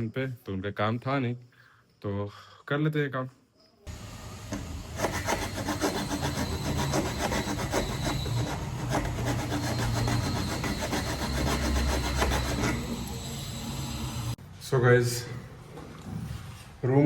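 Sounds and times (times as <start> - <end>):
tool rasping material: 3.9 - 14.4.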